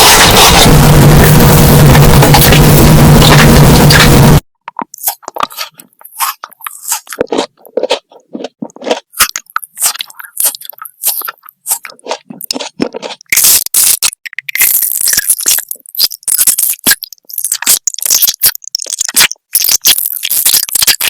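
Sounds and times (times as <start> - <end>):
loud steady noise: 0.0 - 4.4
person chewing crunchy food: 0.0 - 21.0.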